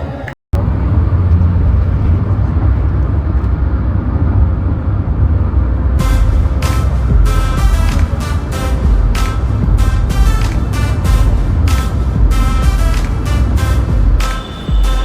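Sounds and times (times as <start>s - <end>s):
vehicle rumble from inside: 0.6s - 15.0s
music: 6.0s - 15.0s.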